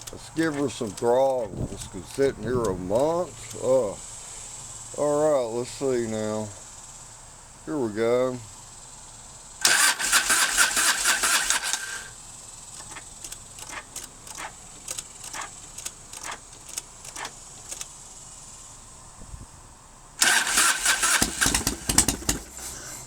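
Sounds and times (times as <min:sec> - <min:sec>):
scattered clicks: 0:00.0 - 0:04.0, 0:12.8 - 0:18.0
motorcycle starter cranking: 0:00.0 - 0:06.4, 0:09.6 - 0:18.8, 0:20.2 - 0:23.0.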